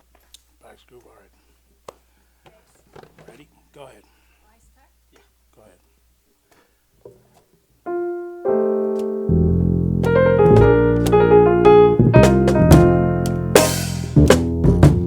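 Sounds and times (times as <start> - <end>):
electric keyboard chords: 7.9 - 15.0
low bass notes: 9.2 - 15.0
light drum taps: 10.0 - 11.4, 12.0 - 15.0
cymbal splash: 13.6 - 14.2.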